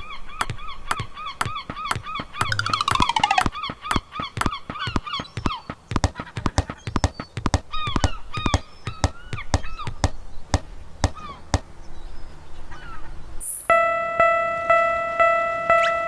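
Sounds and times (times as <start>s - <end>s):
rapid irregular clicks and taps: 0.4s - 11.7s.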